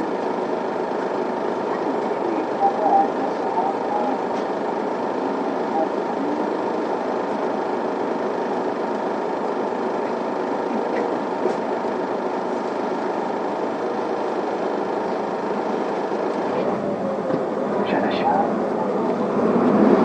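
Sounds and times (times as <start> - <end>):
bus engine running: 0.0 - 20.0
road noise: 3.2 - 20.0.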